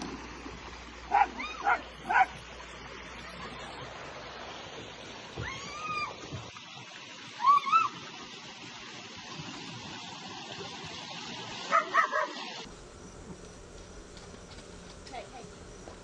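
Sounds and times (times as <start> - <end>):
dog yipping: 1.1 - 2.4, 11.7 - 12.4.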